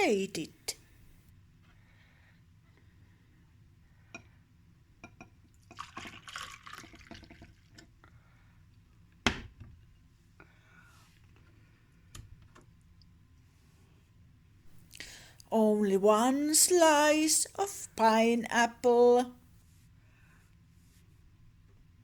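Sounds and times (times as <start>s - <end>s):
small clicks and splashes: 5.6s - 8.0s
smoothie pouring into a glass: 5.7s - 7.8s.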